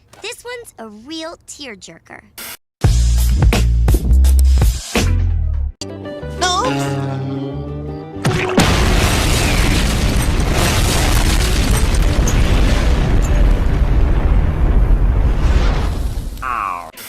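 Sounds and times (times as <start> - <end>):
explosion-like rumble: 8.6 - 16.4.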